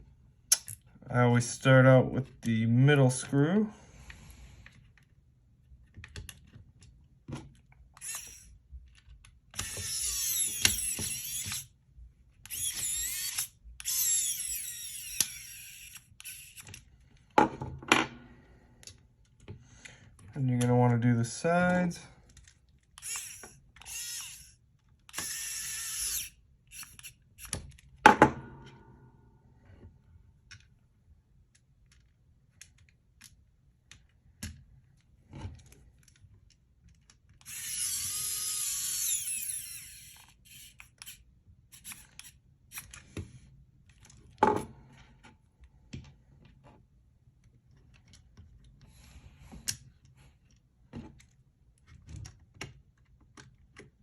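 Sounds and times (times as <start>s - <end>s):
electric screwdriver whirring: 8.0s - 8.6s, 9.5s - 11.7s, 12.4s - 16.8s, 23.0s - 27.6s, 37.4s - 43.0s.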